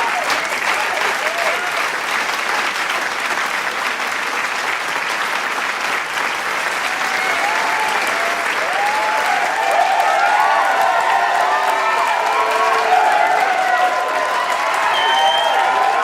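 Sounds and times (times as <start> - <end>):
crowd cheering and calling out: 0.0 - 1.8, 6.8 - 16.0
crowd applauding: 0.0 - 16.0.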